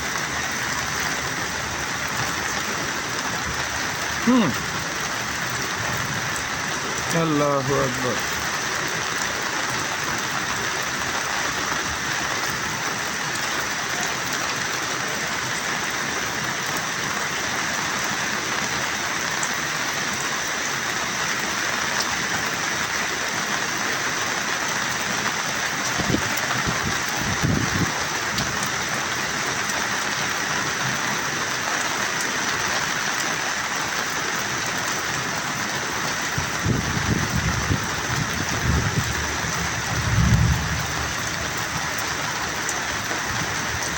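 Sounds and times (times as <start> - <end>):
heavy rain falling: 0.0 - 43.9
low thumps: 39.8 - 41.6.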